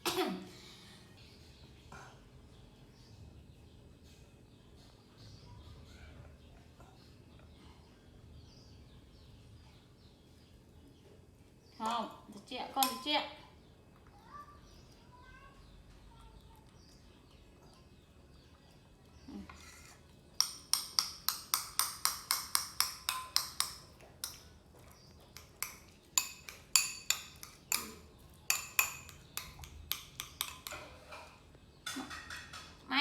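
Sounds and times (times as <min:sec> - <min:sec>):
spoon tapping a dish: 0:12.8 - 0:13.1, 0:20.4 - 0:31.3.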